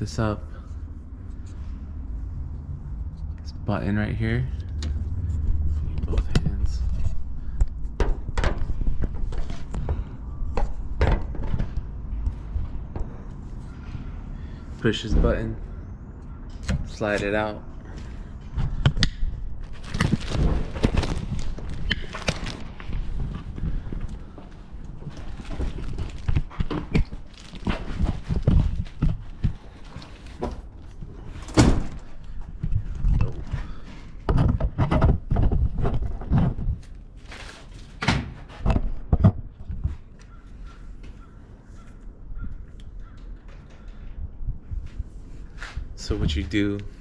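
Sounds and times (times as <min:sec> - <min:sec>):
low steady rumble: 0:00.0 - 0:37.3.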